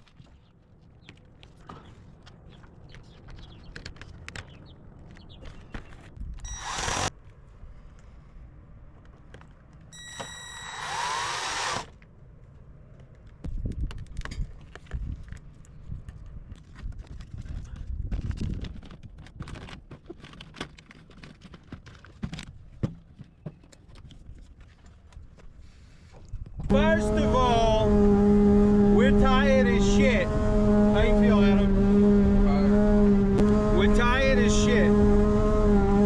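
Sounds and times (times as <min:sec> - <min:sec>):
power drill whining: 0:06.5 - 0:07.1, 0:10.0 - 0:11.9.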